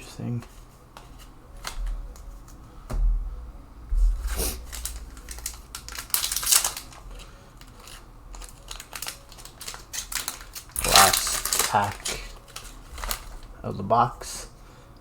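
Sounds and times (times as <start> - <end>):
packaging rustling and crinkling: 4.0 - 13.6.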